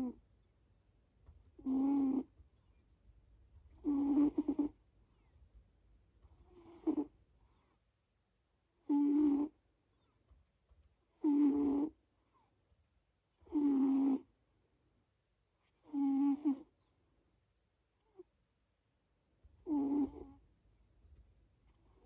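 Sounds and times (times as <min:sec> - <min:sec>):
pet snoring: 0:01.6 - 0:02.3, 0:03.8 - 0:04.8, 0:06.4 - 0:07.2, 0:08.8 - 0:09.6, 0:11.2 - 0:12.0, 0:13.4 - 0:14.3, 0:15.7 - 0:16.7, 0:19.6 - 0:20.4.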